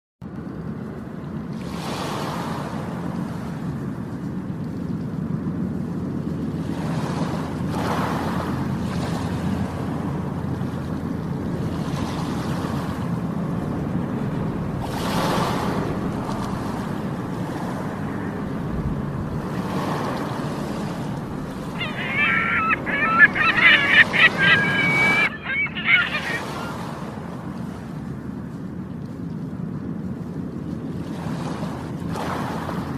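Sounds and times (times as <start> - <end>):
sea surf washing ashore: 5.5 - 29.3, 30.3 - 32.9
seagulls calling: 12.8 - 27.0.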